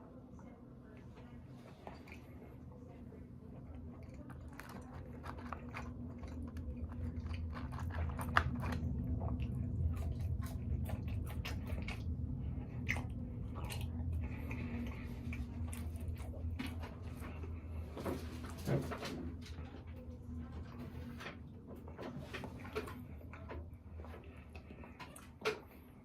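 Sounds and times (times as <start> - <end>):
person chewing food: 3.7 - 18.5.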